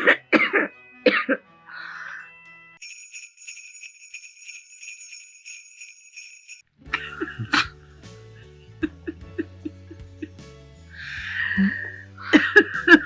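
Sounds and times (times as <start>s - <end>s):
jingle bells shaken: 2.8s - 6.6s.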